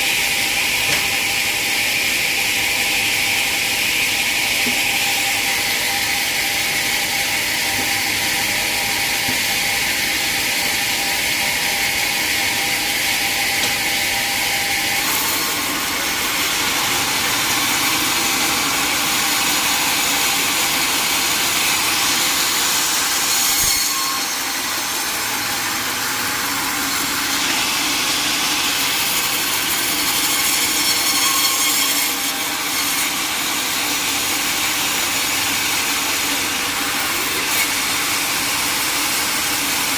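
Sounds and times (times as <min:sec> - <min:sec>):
sawmill saw cutting wood: 0:00.0 - 0:39.9.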